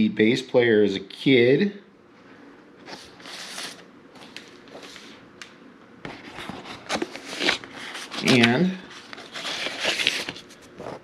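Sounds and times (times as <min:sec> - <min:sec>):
paper sleeve rustling: 0:02.8 - 0:05.2, 0:06.1 - 0:11.0.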